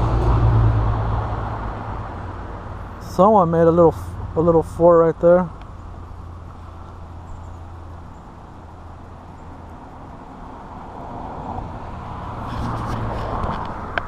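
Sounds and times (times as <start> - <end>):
road traffic rumble: 0.0 - 14.0.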